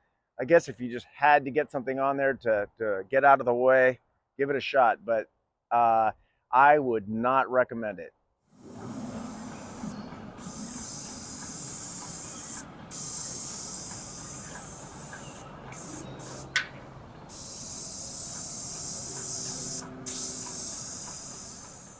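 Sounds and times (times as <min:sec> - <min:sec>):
paint sprayer hissing: 0:08.6 - 0:21.9.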